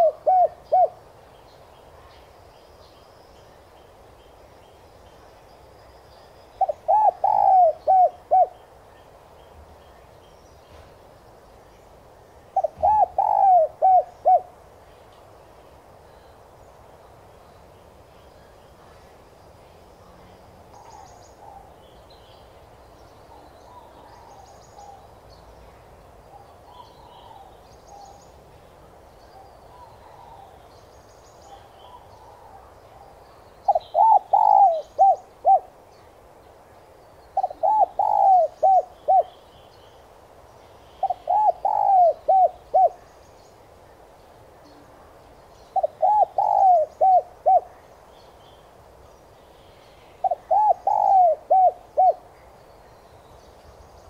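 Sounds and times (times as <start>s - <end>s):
dove cooing: 0.0s - 1.0s, 6.6s - 8.6s, 12.6s - 14.6s, 33.7s - 35.8s, 37.4s - 39.4s, 41.0s - 43.0s, 45.8s - 47.8s, 50.2s - 52.4s
small birds chirping: 0.0s - 54.0s.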